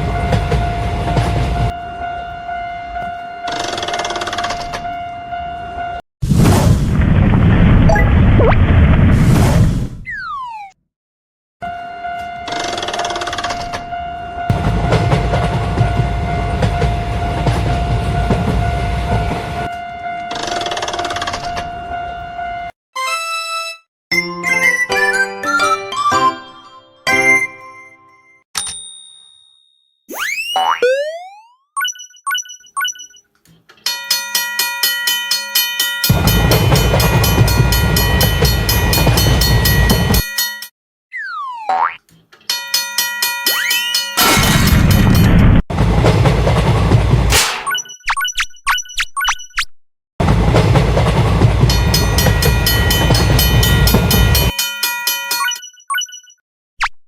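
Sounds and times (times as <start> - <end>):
train rumbling: 0.0 - 4.8, 12.8 - 22.4, 35.9 - 40.6, 44.2 - 47.3, 50.2 - 54.6
railroad crossing bell ringing: 33.8 - 40.7, 42.5 - 45.4, 51.6 - 55.7.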